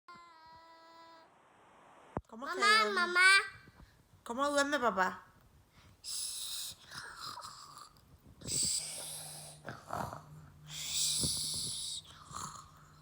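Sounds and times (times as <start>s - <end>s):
child imitating snoring: 6.5s - 13.0s.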